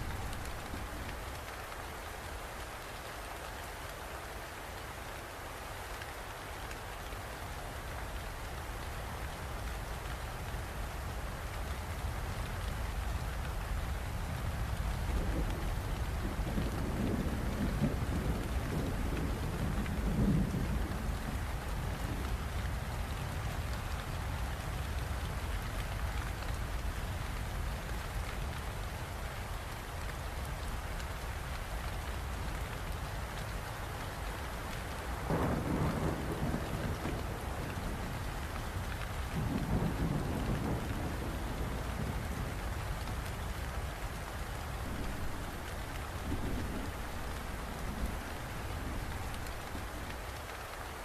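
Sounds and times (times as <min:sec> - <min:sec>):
steady rain falling: 0:00.0 - 0:51.0
low rolls of thunder: 0:14.3 - 0:26.0, 0:33.9 - 0:50.4.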